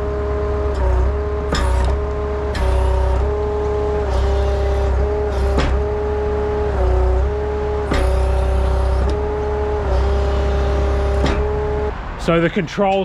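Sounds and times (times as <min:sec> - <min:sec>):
skid steer engine drone: 0:00.0 - 0:13.0
sharp metal clunks: 0:01.5 - 0:03.7, 0:04.9 - 0:06.1, 0:07.9 - 0:09.3, 0:11.1 - 0:11.7.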